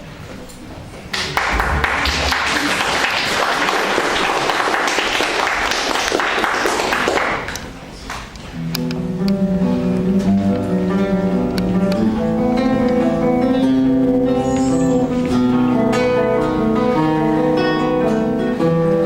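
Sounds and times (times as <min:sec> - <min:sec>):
audience applauding: 0:01.1 - 0:08.3
acoustic guitar playing: 0:07.4 - 0:19.0.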